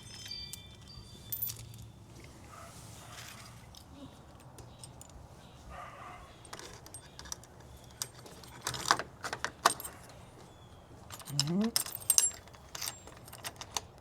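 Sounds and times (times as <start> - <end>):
metal lock parts clicking: 3.2 - 5.2, 6.3 - 14.0.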